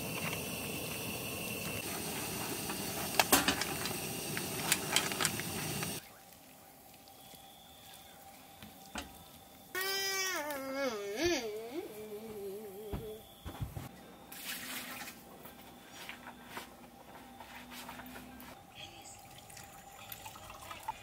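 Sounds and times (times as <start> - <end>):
steady cooking hiss: 0.0 - 14.6
utensils clinking: 3.1 - 6.0
child crying: 9.7 - 13.2.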